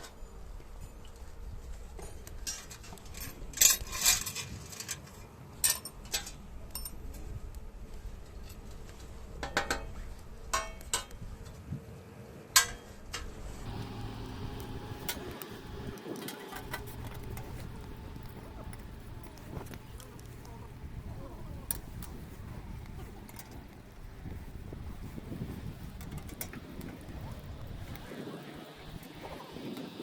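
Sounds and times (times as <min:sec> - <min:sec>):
low steady rumble: 0:13.3 - 0:28.1.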